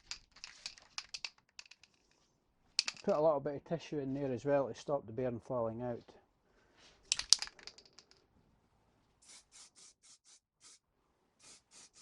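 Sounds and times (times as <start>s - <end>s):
small knocks clattering: 0.0s - 2.2s, 2.8s - 3.2s, 7.1s - 8.3s
paintbrush scratchy strokes: 9.2s - 10.8s, 11.4s - 12.0s.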